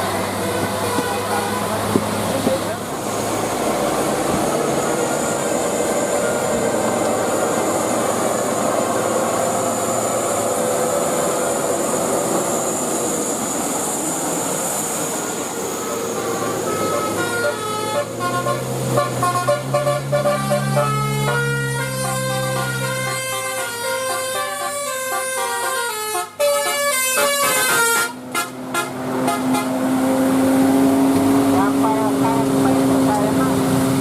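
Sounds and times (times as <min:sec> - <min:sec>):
vehicle and road noise: 0:00.0 - 0:34.0
musical air horn playing a tune: 0:16.1 - 0:29.8.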